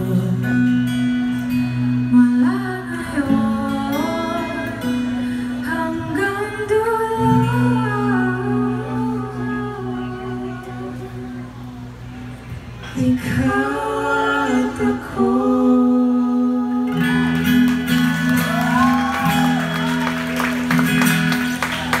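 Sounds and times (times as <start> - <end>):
acoustic guitar: 0.0 - 22.0
voices singing: 13.0 - 17.3.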